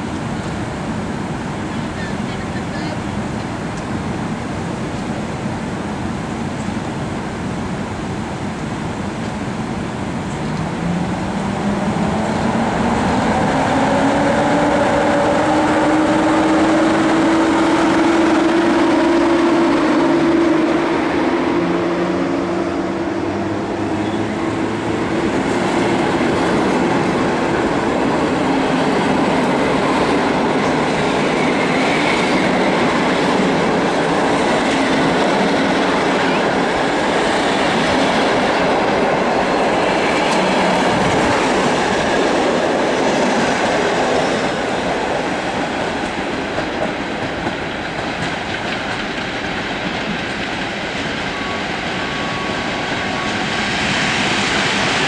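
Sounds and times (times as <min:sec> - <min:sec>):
train rolling rumble: 0:00.0 - 0:55.0
train whine: 0:00.0 - 0:55.0
train wheel clatter: 0:25.0 - 0:55.0.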